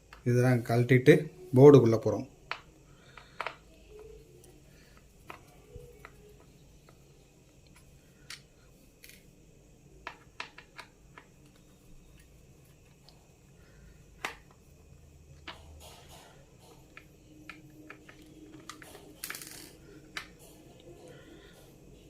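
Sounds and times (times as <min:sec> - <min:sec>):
plastic connectors clicking: 0:02.5 - 0:05.4, 0:10.0 - 0:11.6, 0:16.9 - 0:20.4.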